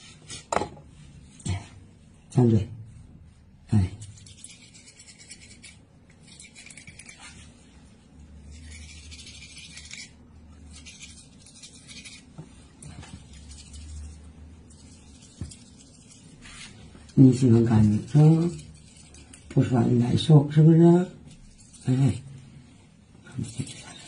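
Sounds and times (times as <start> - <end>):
toothbrush scrubbing cat's teeth: 3.8 - 20.3, 21.2 - 22.2, 23.2 - 24.0.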